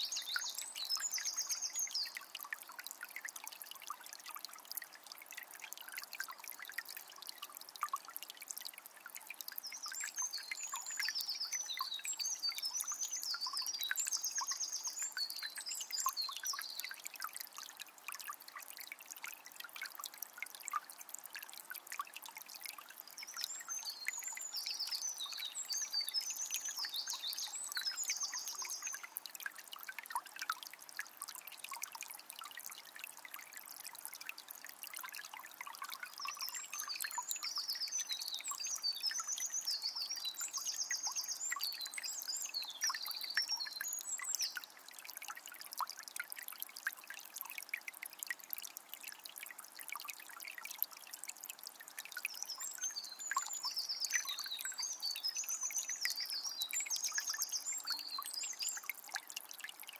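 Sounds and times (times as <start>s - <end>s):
songbird singing: 0.0s - 2.3s, 9.6s - 16.9s, 23.1s - 29.2s, 36.0s - 44.7s, 52.3s - 58.9s.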